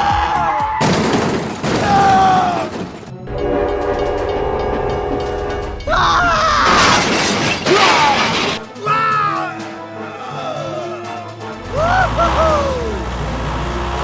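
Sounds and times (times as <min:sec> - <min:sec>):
background music with held tones: 0:02.2 - 0:06.6, 0:08.3 - 0:14.0.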